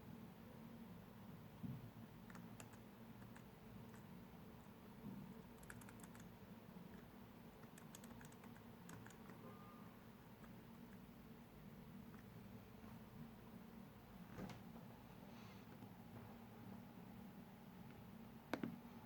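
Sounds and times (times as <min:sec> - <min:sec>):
low room hum: 0:00.0 - 0:19.0
typing on laptop keyboard: 0:02.2 - 0:04.1, 0:05.4 - 0:06.3, 0:06.9 - 0:09.4.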